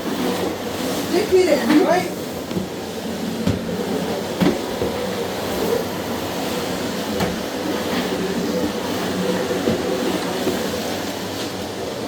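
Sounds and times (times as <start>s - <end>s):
knocks from handling cleaner: 4.4s - 5.0s.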